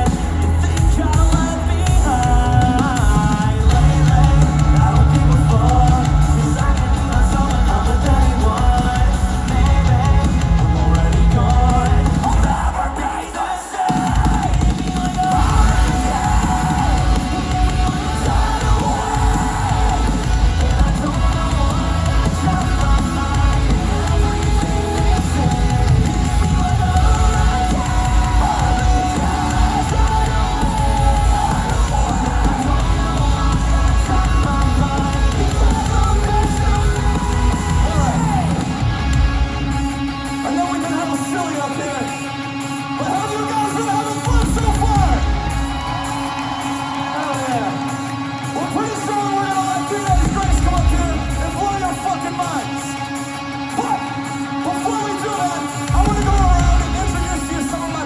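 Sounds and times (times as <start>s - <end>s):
heavy bass: 0.0s - 13.1s, 13.9s - 40.8s, 44.2s - 46.5s, 50.1s - 51.9s, 55.9s - 58.0s
distorted guitars: 0.0s - 58.0s
drums pounding: 0.0s - 58.0s.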